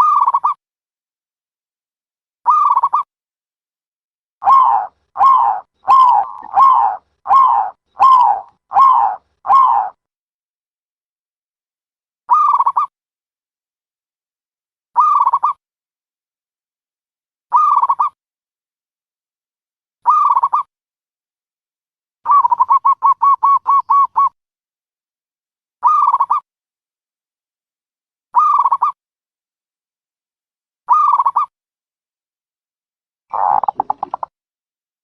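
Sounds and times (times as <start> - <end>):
dove cooing: 4.4 - 10.0, 33.3 - 34.3.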